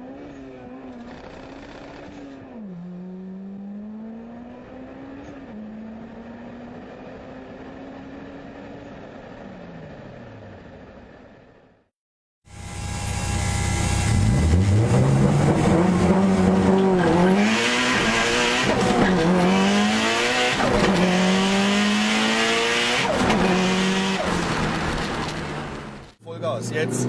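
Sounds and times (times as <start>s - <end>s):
car engine accelerating: 0.0s - 11.7s, 12.5s - 26.2s.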